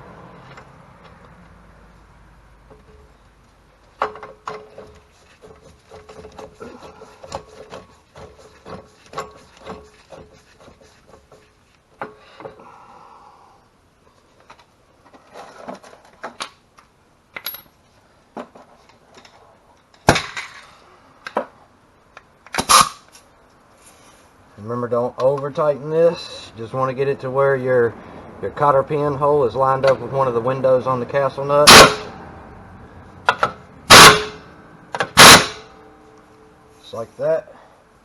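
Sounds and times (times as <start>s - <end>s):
loud metallic clanks: 31.6s - 32.2s, 33.2s - 35.8s.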